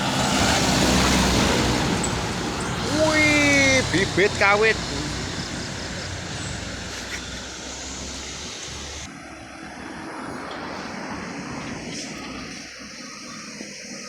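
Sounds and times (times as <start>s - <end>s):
low engine hum: 0.0s - 9.3s
heavy vehicles passing: 0.0s - 12.5s.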